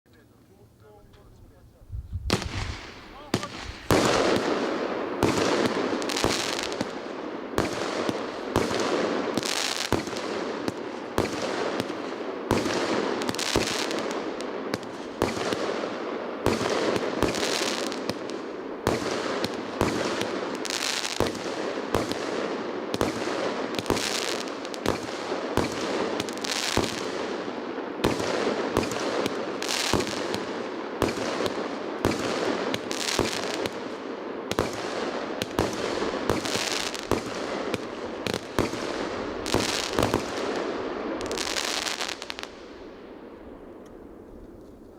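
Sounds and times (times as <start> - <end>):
fireworks banging: 0.5 - 18.2, 34.5 - 44.9
fireworks hissing crackle: 0.5 - 22.2, 34.6 - 42.8.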